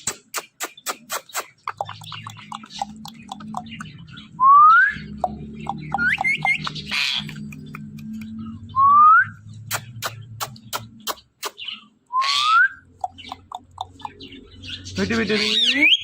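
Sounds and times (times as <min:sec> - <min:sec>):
parrot chirps: 0:00.0 - 0:03.9, 0:05.0 - 0:08.3, 0:09.6 - 0:14.6
parrot clicking: 0:00.1 - 0:04.0, 0:05.2 - 0:08.4, 0:09.7 - 0:11.6, 0:12.9 - 0:14.3
parrot squawk: 0:06.0 - 0:07.4, 0:11.5 - 0:14.1, 0:15.2 - 0:16.0.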